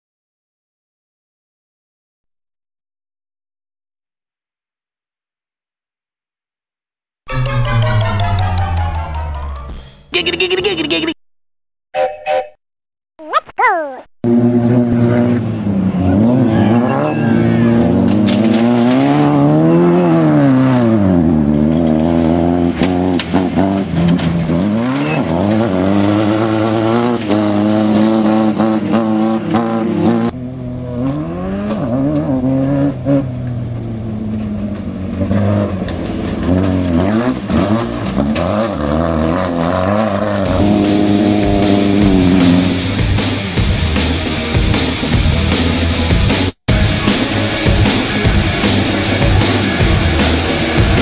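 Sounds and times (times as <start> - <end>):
race car engine revving: 14.2 - 51.0.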